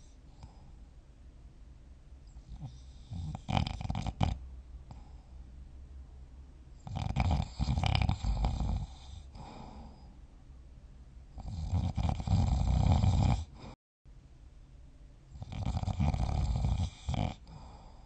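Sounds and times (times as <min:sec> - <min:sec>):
person snoring roughly: 0:02.6 - 0:04.4, 0:06.8 - 0:10.0, 0:11.4 - 0:13.6, 0:15.4 - 0:17.9.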